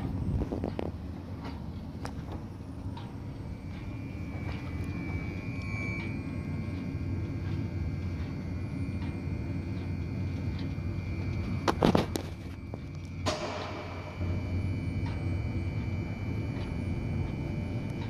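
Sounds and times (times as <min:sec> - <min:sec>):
high-pitched whine: 0:00.0 - 0:18.0
wind turbine drone: 0:00.0 - 0:18.0
loud sharp knocks: 0:13.2 - 0:14.2.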